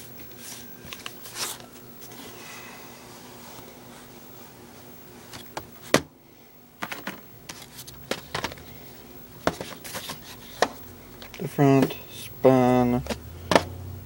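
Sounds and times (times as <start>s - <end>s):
plastic cases clicking and tapping: 6.8s - 8.6s, 9.4s - 12.0s, 13.0s - 13.7s.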